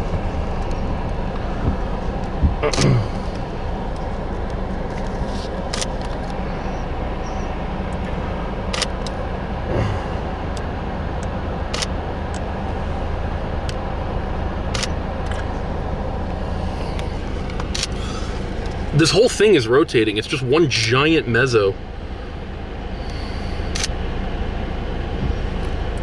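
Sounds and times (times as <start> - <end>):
car engine idling: 0.0 - 26.0
sharp clicks: 5.6 - 6.4, 8.7 - 9.2, 10.6 - 12.5, 14.7 - 15.5.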